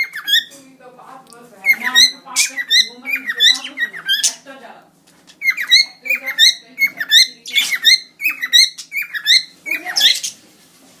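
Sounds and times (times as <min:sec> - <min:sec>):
cockatiel chirping and warbling: 0:00.0 - 0:00.6, 0:01.6 - 0:04.4, 0:05.3 - 0:10.4.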